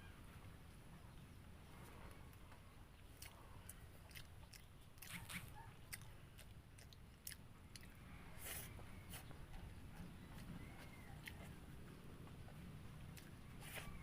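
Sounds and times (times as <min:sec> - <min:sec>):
person chewing and crunching: 0:03.0 - 0:14.0.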